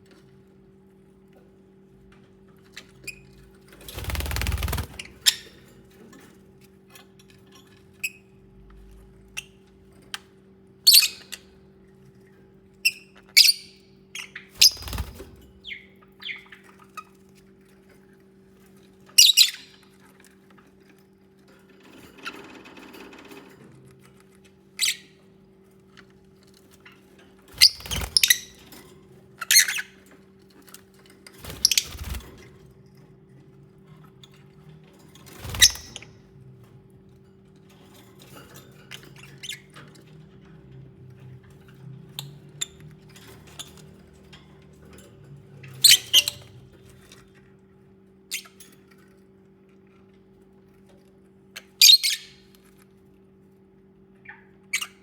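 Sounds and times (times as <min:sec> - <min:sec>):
birds chirping and squawking: 0:04.0 - 0:05.7, 0:13.1 - 0:17.0, 0:27.5 - 0:30.1, 0:31.4 - 0:32.4, 0:35.2 - 0:36.2, 0:45.4 - 0:47.2, 0:51.6 - 0:52.6.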